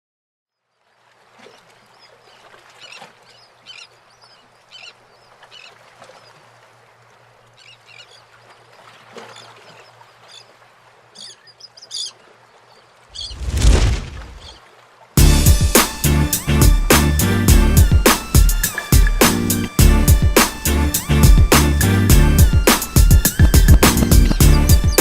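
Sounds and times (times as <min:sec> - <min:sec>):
birds squawking: 0:02.4 - 0:05.8, 0:11.2 - 0:12.4, 0:13.1 - 0:13.5, 0:14.4 - 0:14.7, 0:20.4 - 0:25.0.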